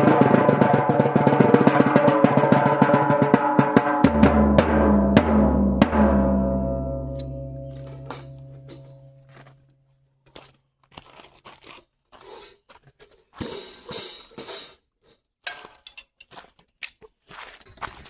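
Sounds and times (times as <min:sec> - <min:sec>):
low drum note ringing: 0:04.0 - 0:09.3.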